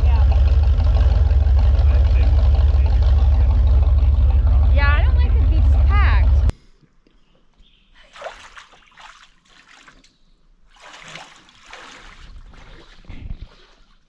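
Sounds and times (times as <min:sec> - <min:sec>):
low bump: 0:00.0 - 0:06.5
water lapping and splashing: 0:08.0 - 0:14.0.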